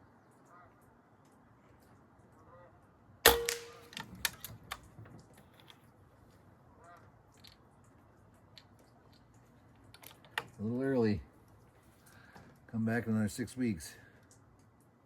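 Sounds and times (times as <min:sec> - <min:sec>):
air rifle shot: 0:03.3 - 0:03.9.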